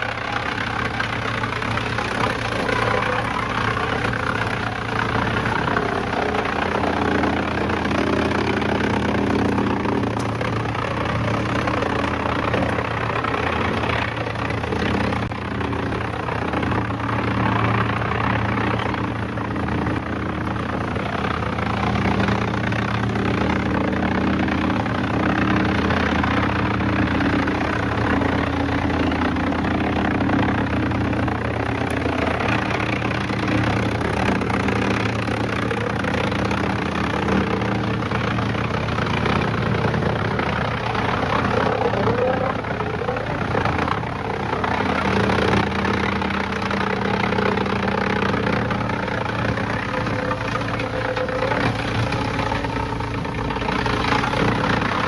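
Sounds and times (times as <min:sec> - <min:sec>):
low engine hum: 0:00.0 - 0:55.0.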